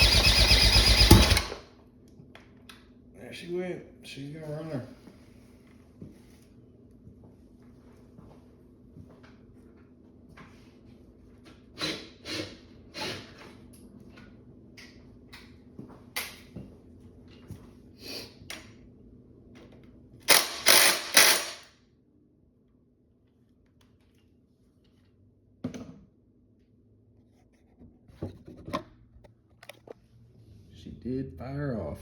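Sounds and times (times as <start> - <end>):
outboard motor cranking: 0.0 - 1.6.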